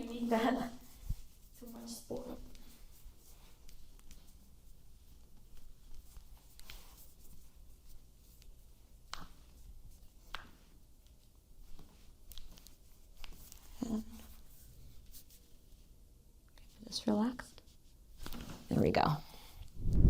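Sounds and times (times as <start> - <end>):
hands rubbing a bare foot: 0.2 - 16.0.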